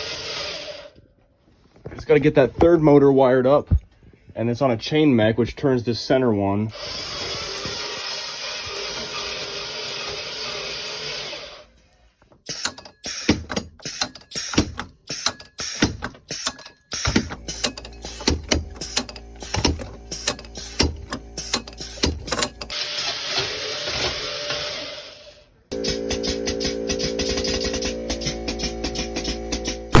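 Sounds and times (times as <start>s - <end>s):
mechanical clicks and clacks: 12.4s - 23.5s
mechanism whirring hiss: 25.7s - 30.0s.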